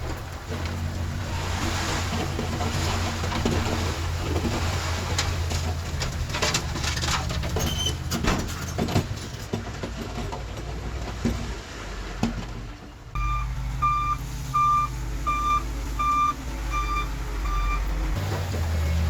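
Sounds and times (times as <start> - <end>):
metallic clanks and rattles: 0.0 - 10.8
bulldozer diesel engine running: 0.0 - 11.2, 12.0 - 19.0.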